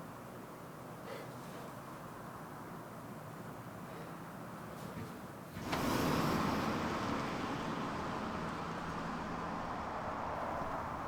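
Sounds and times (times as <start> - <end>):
car road and engine noise: 5.5 - 11.0.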